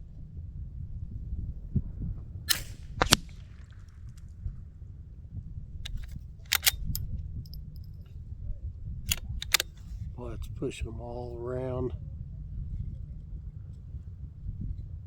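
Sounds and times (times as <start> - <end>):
wind rumble: 0.0 - 15.0
rifle gunshots echoing: 2.5 - 3.9, 9.1 - 9.8
short clicks: 5.9 - 7.0, 9.1 - 9.9.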